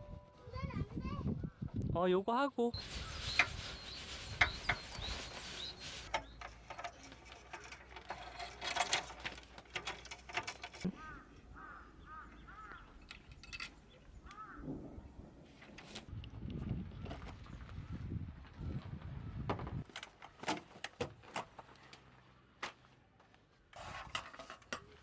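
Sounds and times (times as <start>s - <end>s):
short chirping calls: 2.8s - 7.0s
small hard objects clinking: 2.8s - 11.0s.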